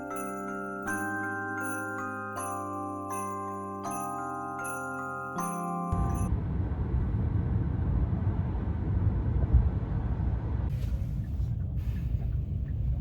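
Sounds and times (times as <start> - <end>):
vehicle rumble: 6.0 - 13.0.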